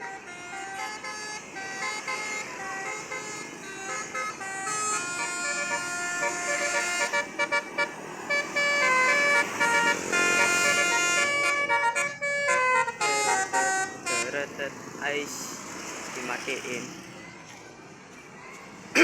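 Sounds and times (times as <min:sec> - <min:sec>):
bus horn playing melody: 0:00.0 - 0:14.6.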